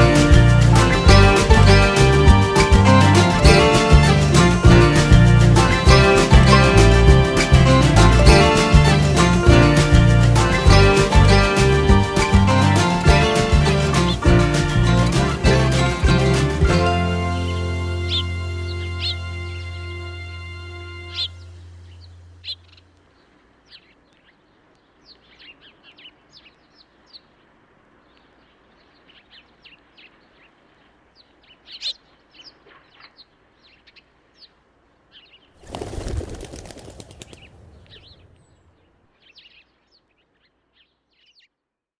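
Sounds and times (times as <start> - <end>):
small birds chirping: 21.1 - 41.5
rapid wing flapping: 35.6 - 38.4.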